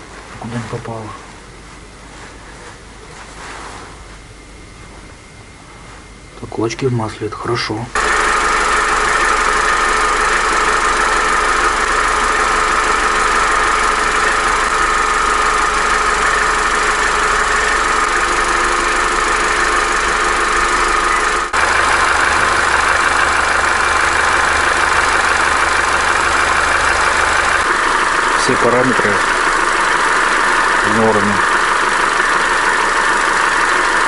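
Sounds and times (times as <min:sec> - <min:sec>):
car engine running: 0:08.0 - 0:34.0.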